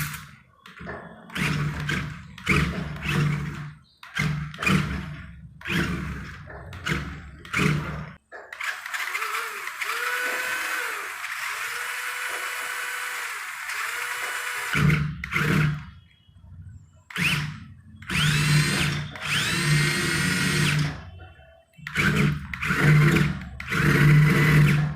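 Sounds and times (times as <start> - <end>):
small electric motor whining: 8.6 - 15.4.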